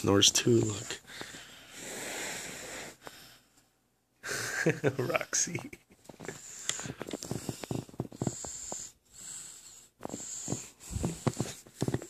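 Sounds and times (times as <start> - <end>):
dog snoring: 6.4 - 12.0.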